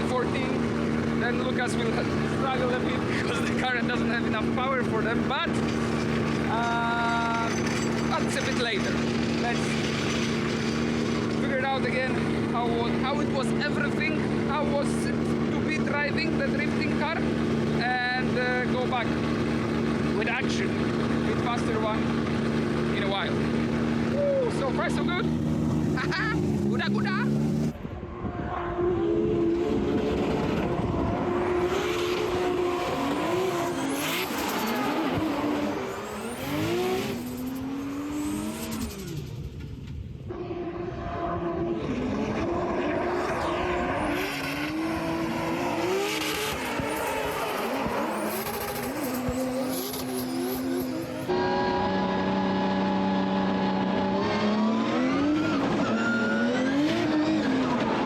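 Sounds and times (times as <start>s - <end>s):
car engine revving hard: 0.0s - 27.8s, 28.7s - 39.6s, 40.3s - 58.0s
tyre squeal: 31.5s - 39.2s, 43.2s - 58.0s.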